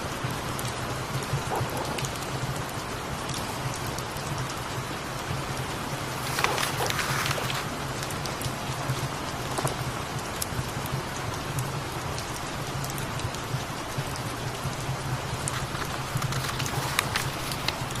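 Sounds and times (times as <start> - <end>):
steady rain: 0.0 - 18.0
wood fire crackling: 5.9 - 8.5, 15.0 - 18.0.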